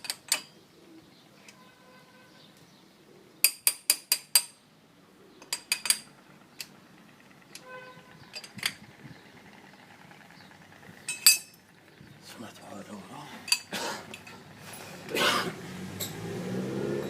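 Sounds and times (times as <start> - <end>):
metal-on-metal clinks: 11.1 - 11.6.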